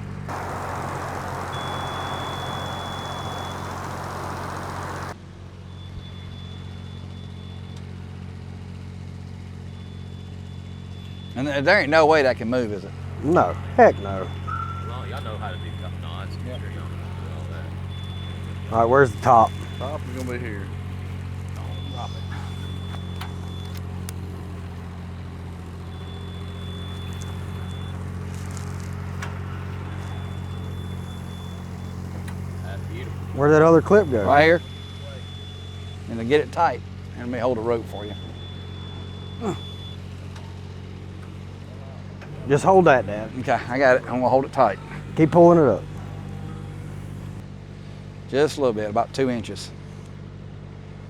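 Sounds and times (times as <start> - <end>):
engine humming: 0.0 - 5.2, 13.5 - 47.4
faint high whine: 0.3 - 5.2
lift engine idling: 0.3 - 5.2
loud hiss: 0.3 - 5.2.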